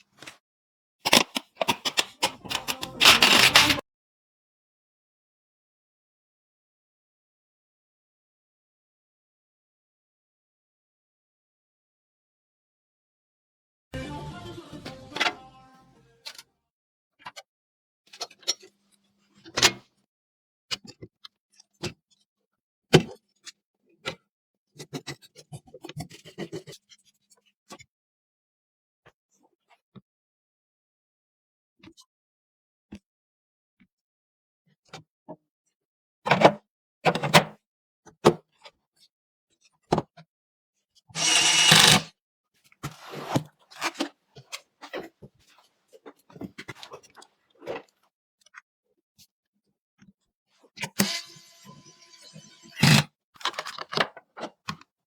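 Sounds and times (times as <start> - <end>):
rasping rustling sound: 2.2 - 3.8
computer parts clicking and knocking: 41.2 - 42.1, 52.7 - 54.0
plastic and metal clicks and knocks: 52.8 - 54.8.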